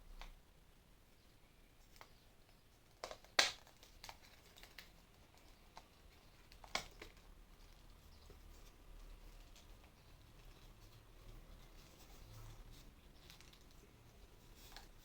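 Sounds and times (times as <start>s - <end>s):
plastic parts clicking together: 3.0s - 7.3s.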